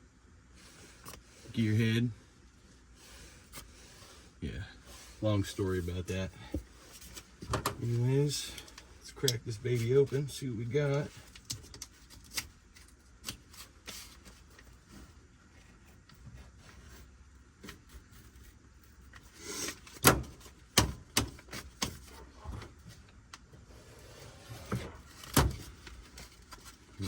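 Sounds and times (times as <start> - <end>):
cardboard rustling: 24.0 - 27.0.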